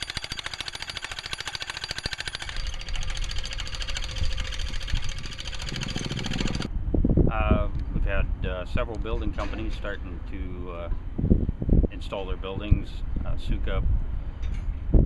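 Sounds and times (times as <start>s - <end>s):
power tool rapid hammering: 0.0s - 6.7s.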